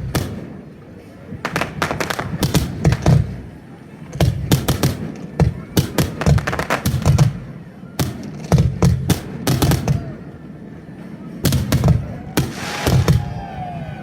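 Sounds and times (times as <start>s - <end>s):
fireworks bangs: 0.0s - 10.3s, 11.4s - 14.0s.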